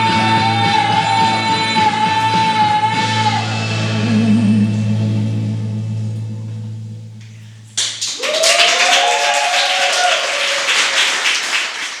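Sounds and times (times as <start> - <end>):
audience applauding: 7.8 - 12.0
person cheering whoop: 8.2 - 11.1.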